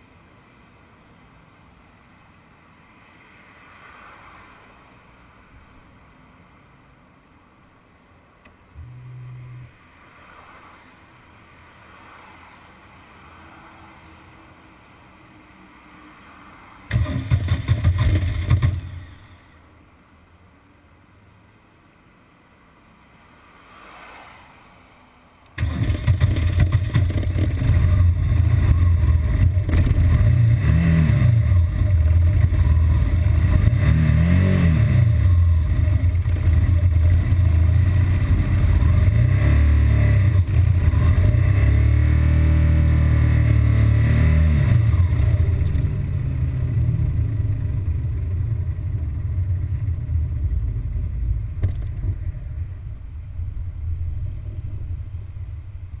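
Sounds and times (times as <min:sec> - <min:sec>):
motorcycle engine revving: 0:16.9 - 0:19.4, 0:25.6 - 0:56.0.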